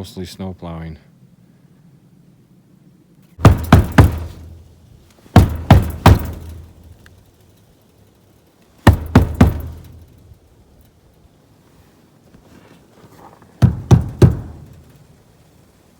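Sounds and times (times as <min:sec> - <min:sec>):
hard knocking: 0:03.4 - 0:04.6, 0:05.4 - 0:06.8, 0:08.8 - 0:10.0, 0:13.6 - 0:14.8.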